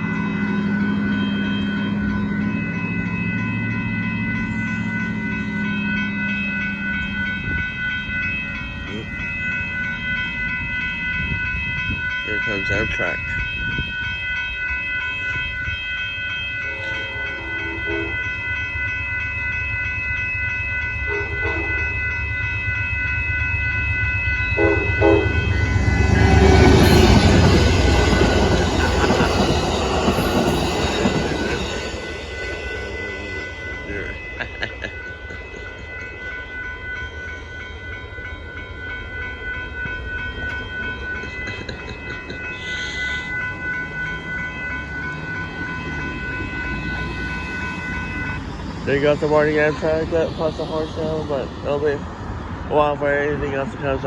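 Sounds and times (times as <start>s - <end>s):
steady high ringing: 0.0s - 54.0s
train rushing by: 0.0s - 54.0s
train horn blasts: 16.6s - 18.2s, 21.1s - 21.9s, 24.6s - 25.8s.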